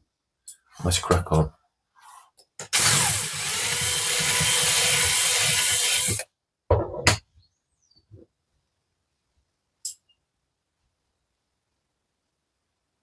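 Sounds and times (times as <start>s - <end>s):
small power drill drilling: 2.6s - 6.3s.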